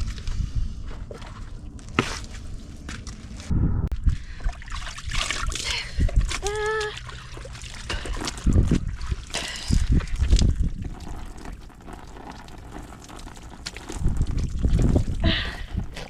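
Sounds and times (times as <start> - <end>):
wind buffeting microphone: 0.0 - 1.1, 3.5 - 4.5, 8.1 - 11.2, 14.0 - 16.0
water trickling and splashing: 4.2 - 16.0.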